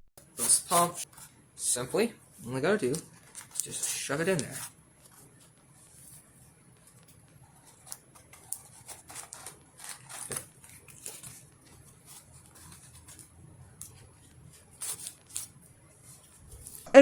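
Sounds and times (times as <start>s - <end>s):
cardboard scrapes and rubs: 7.6s - 13.4s, 14.0s - 16.9s.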